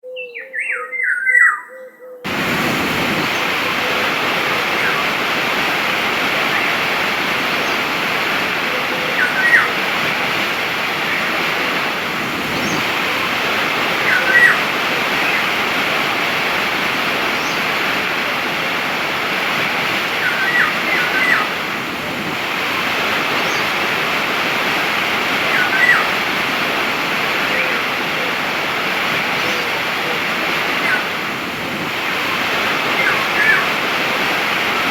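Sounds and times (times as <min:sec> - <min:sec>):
bird chirping: 0:00.0 - 0:02.3
waterfall rushing: 0:02.3 - 0:34.9.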